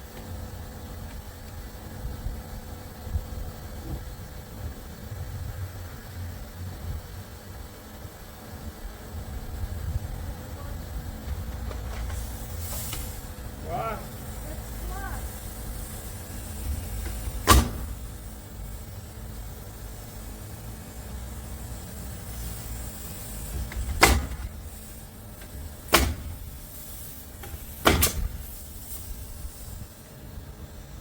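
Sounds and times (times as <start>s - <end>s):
sharp knocks: 17.0s - 18.0s, 25.9s - 26.4s.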